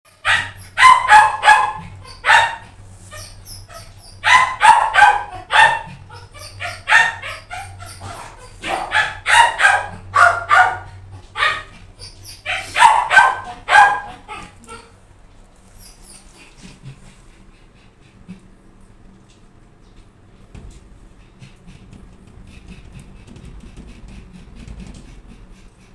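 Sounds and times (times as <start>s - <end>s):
dog barking: 0.2s - 14.8s.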